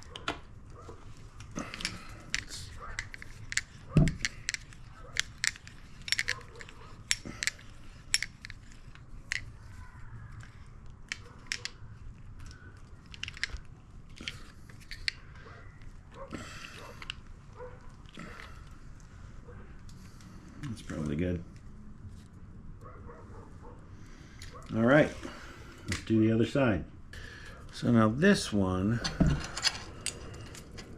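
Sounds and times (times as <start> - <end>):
tools clicking on bicycle parts: 0.0 - 19.0, 29.0 - 30.9.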